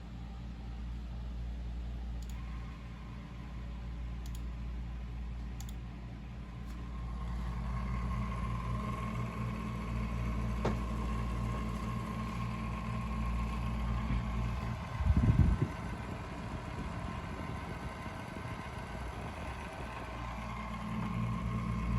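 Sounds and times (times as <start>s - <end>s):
computer fan humming with whine: 0.0s - 21.9s
sharp click: 4.2s - 4.5s.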